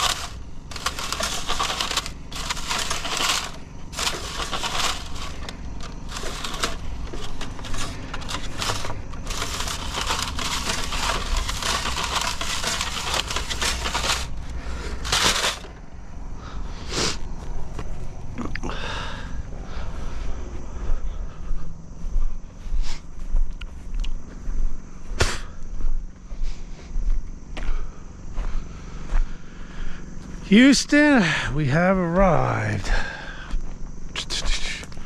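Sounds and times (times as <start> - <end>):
crunching and scraping of rock: 0.0 - 15.9
diesel engine running: 0.0 - 21.2, 28.2 - 33.8.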